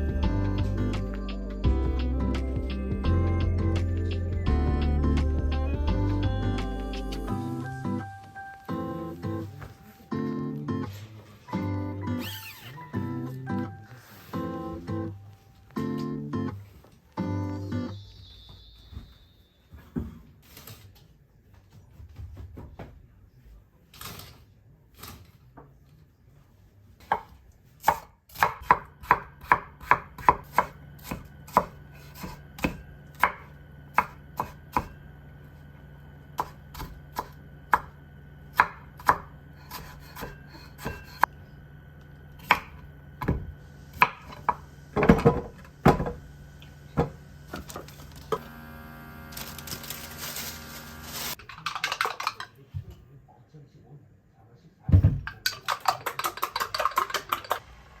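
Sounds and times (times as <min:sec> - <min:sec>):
knife chopping on cutting board: 0:27.0 - 0:35.0, 0:36.4 - 0:37.9, 0:38.5 - 0:41.3, 0:42.4 - 0:46.2
faint steady hum: 0:28.7 - 0:51.4.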